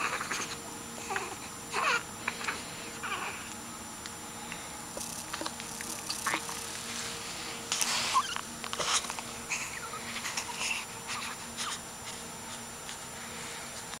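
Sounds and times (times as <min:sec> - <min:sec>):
dog breathy noises: 0:06.1 - 0:13.9.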